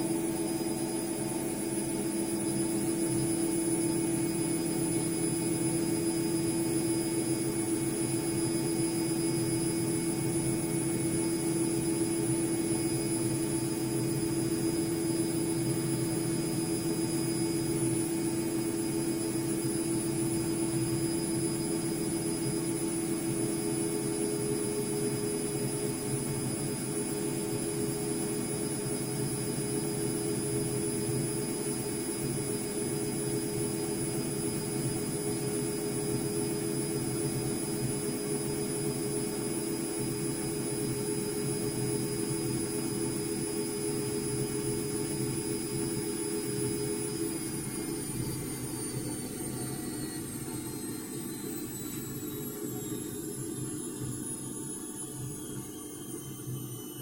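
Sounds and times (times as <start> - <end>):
washing machine motor whine: 0.0 - 57.0.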